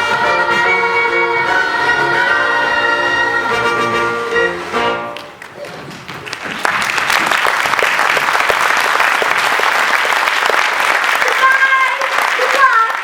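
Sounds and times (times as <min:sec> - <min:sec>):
orchestral string music: 0:00.0 - 0:05.4
audience applause: 0:05.1 - 0:13.0.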